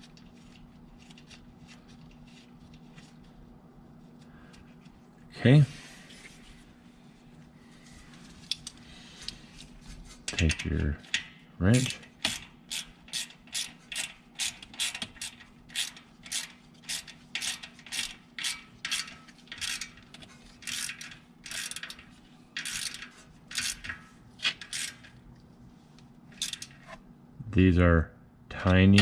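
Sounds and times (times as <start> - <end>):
ratchet wrench clicking: 11.8 - 22.0, 22.6 - 25.1, 26.4 - 26.8.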